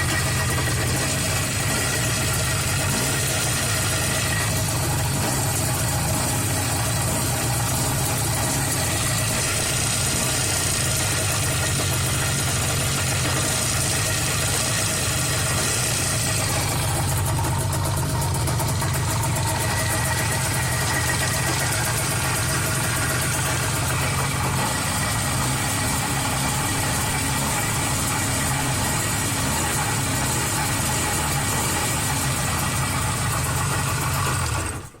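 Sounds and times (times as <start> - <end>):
two-stroke motorcycle engine idling: 0.0 - 35.0.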